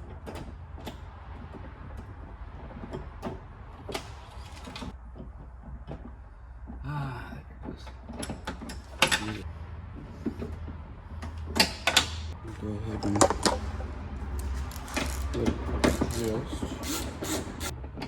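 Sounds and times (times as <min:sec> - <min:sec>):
hand tools clicking on metal: 0:14.3 - 0:17.8.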